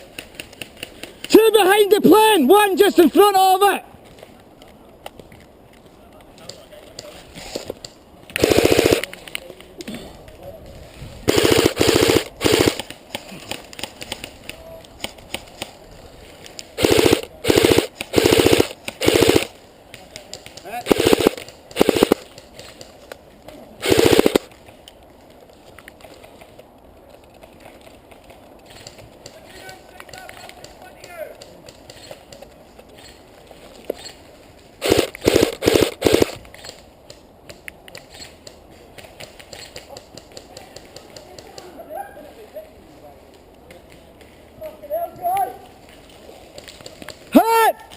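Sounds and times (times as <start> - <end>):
airsoft gun firing bursts: 8.4 - 9.1, 11.3 - 13.0, 16.8 - 19.5, 20.8 - 22.4, 23.8 - 24.5, 34.8 - 36.4.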